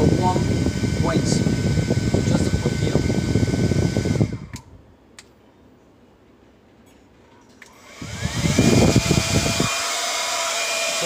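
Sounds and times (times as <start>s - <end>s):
hair dryer motor whining: 0.0s - 4.7s, 7.7s - 11.0s
rush of air: 8.0s - 9.7s.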